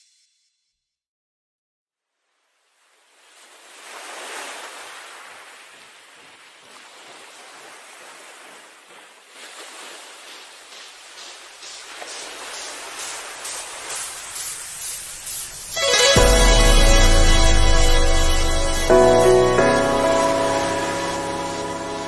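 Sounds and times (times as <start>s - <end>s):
steady rushing hiss: 9.7s - 22.0s.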